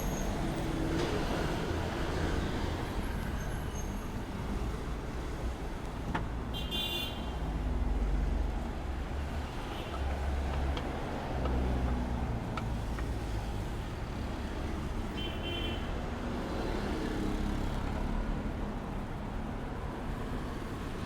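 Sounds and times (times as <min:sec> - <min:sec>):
vehicle engines rumbling: 0:07.4 - 0:15.2.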